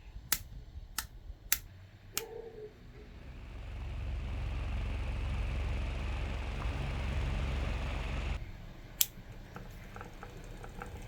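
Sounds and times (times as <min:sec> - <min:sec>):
low hum: 0:00.1 - 0:09.0
sharp clicks: 0:00.3 - 0:02.3.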